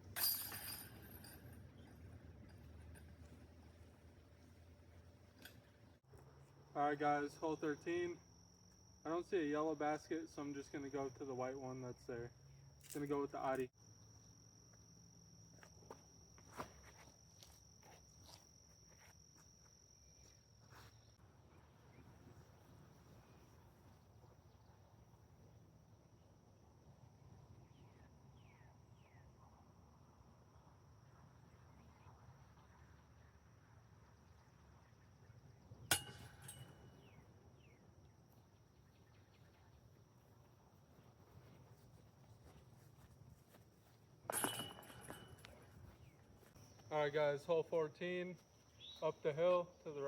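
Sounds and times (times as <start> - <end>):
disc striking metal basket: 0.0 - 1.9, 35.9 - 37.1, 44.3 - 45.7
cricket trill: 0.0 - 50.0
metallic chimes: 0.1 - 1.9, 44.3 - 45.6
metallic clink: 0.1 - 3.4, 35.9 - 37.2, 44.3 - 45.8
high insect drone: 6.2 - 50.0.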